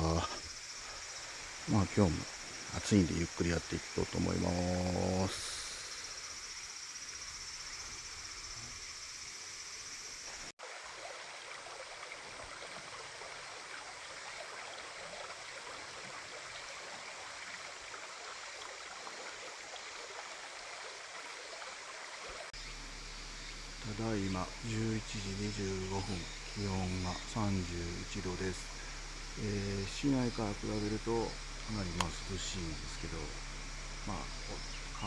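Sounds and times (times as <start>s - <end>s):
stream water rushing: 0.0s - 6.5s, 10.2s - 22.6s.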